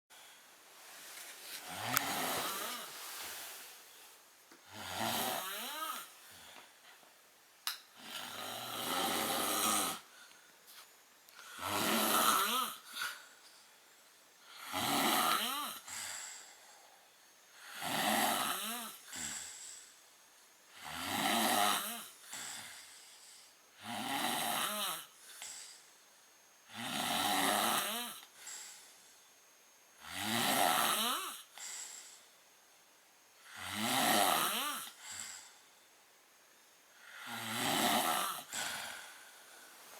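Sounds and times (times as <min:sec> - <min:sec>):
man snoring heavily: 0:01.6 - 0:03.0, 0:04.6 - 0:06.2, 0:08.0 - 0:10.1, 0:11.4 - 0:13.4, 0:14.4 - 0:20.0, 0:20.7 - 0:25.8, 0:26.6 - 0:28.8, 0:30.0 - 0:32.3, 0:33.4 - 0:35.6, 0:37.0 - 0:39.6.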